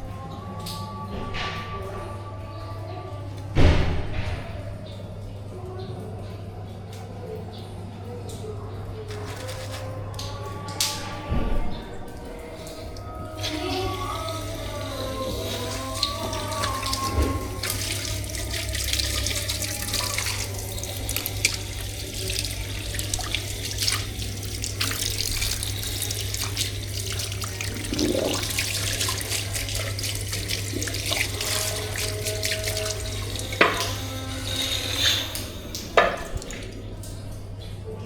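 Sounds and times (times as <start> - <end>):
tap water running into sink: 12.6 - 37.2.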